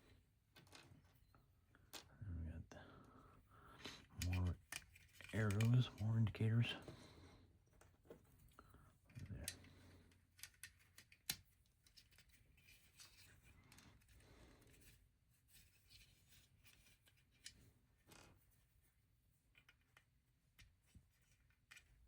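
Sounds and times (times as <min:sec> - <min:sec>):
plastic bricks clicking together: 0:10.3 - 0:12.2.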